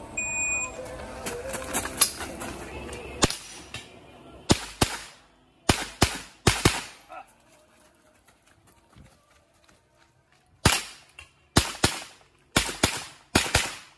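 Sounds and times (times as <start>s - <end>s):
gunshots: 4.5s - 7.1s, 10.6s - 13.9s.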